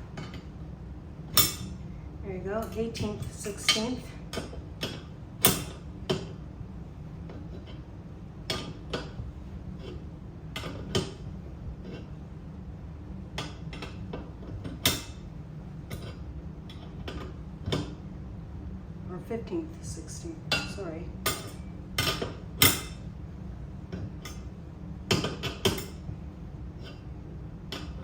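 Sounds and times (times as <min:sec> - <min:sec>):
steady low hum: 0:00.0 - 0:28.0.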